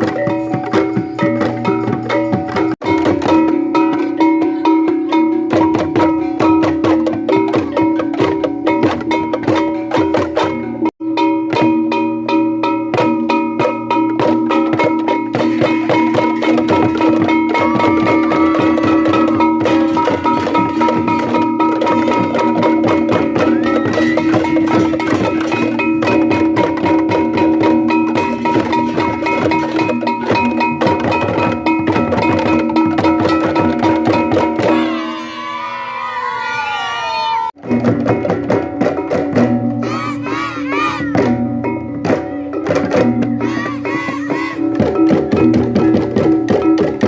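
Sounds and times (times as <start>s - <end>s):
bamboo slit drums clattering: 13.0s - 34.8s.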